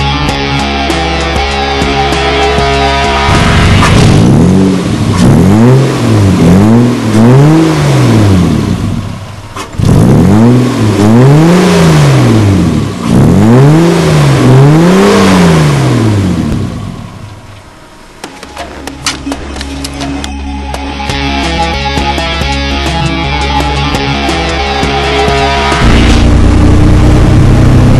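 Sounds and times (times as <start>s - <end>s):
sports car engine revving: 2.0s - 17.3s, 23.8s - 27.9s.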